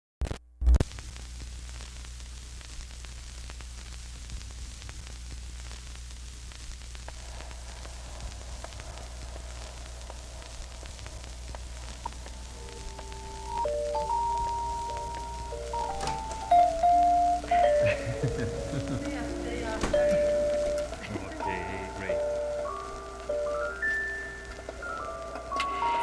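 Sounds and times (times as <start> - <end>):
crackling static hiss: 0.2 - 26.0
low hum: 5.6 - 26.0
faint held musical notes: 11.7 - 26.0.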